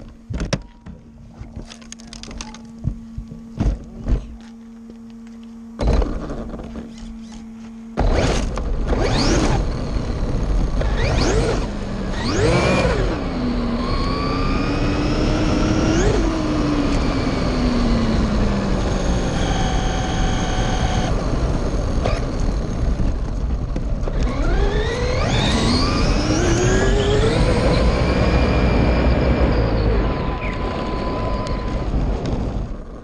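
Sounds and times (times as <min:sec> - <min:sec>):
rc car motor whining: 0:05.3 - 0:32.4
tyre and wind noise: 0:16.0 - 0:33.0.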